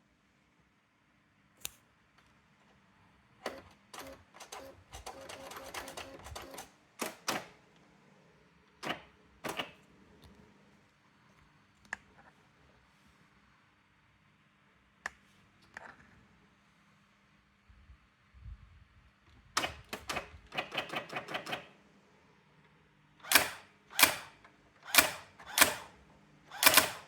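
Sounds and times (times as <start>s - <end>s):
electronic typewriter clattering: 3.5s - 7.5s, 19.6s - 21.7s, 26.6s - 27.0s.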